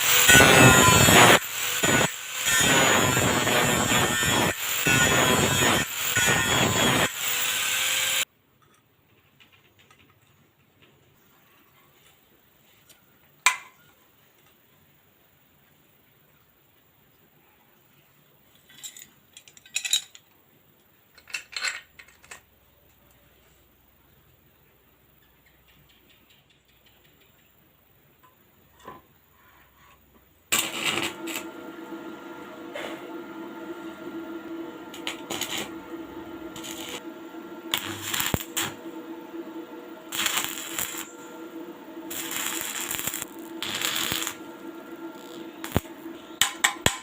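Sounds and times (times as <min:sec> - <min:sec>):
welding arc crackling: 0:00.0 - 0:08.2, 0:30.5 - 0:47.0
metal objects clinking: 0:18.6 - 0:20.3
electrical hum: 0:30.5 - 0:47.0.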